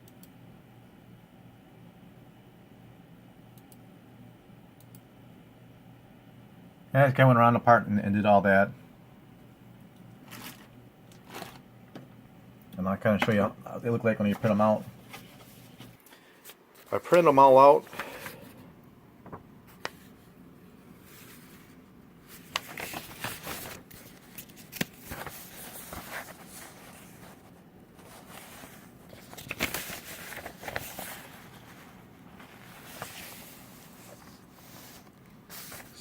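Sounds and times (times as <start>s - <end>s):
paper sheets rustling: 10.2s - 11.7s, 13.1s - 18.6s, 21.0s - 36.0s.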